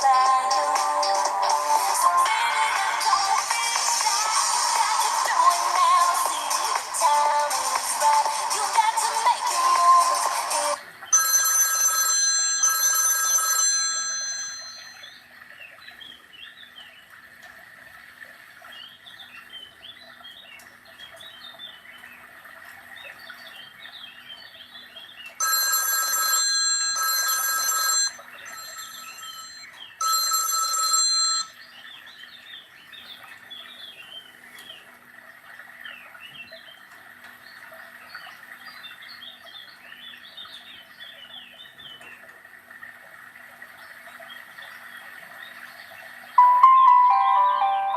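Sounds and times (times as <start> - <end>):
musical ringtone tune: 5.2 - 15.2, 25.4 - 31.5, 46.4 - 47.9
electronic bell-like phone ring: 11.1 - 15.2, 25.4 - 31.6, 46.4 - 47.9.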